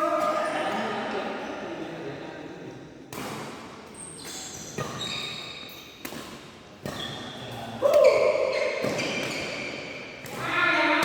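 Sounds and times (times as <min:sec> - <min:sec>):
racket hitting shuttlecock: 0:03.1 - 0:11.0
shoes squeaking on court floor: 0:03.2 - 0:10.3.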